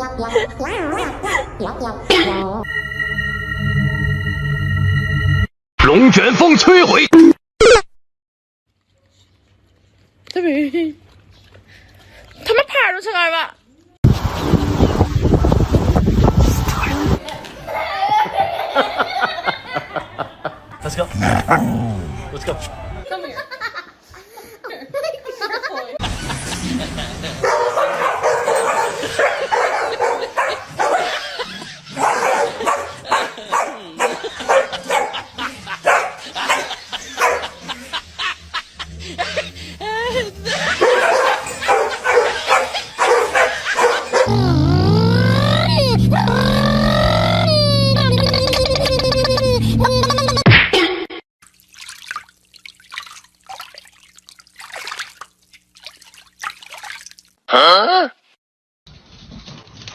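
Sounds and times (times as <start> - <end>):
dog barking and yipping: 27.4 - 37.7, 40.6 - 44.3
water splashing and dripping: 51.4 - 57.4.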